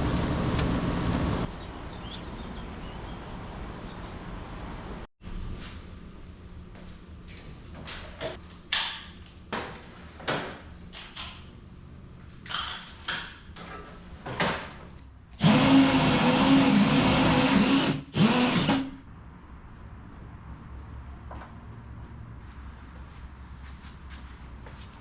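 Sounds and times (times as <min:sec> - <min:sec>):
power drill running: 0:15.4 - 0:18.9.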